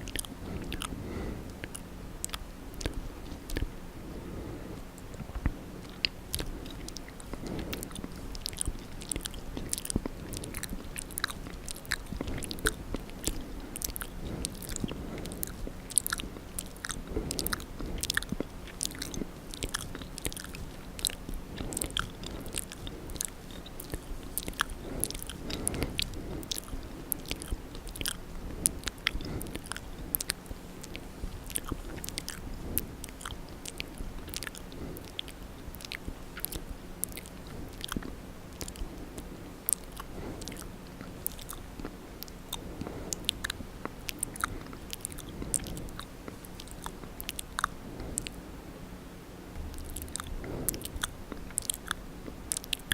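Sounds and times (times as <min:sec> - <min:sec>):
wet mouth clicks: 0:00.0 - 0:03.8, 0:04.4 - 0:48.4, 0:49.6 - 0:52.9.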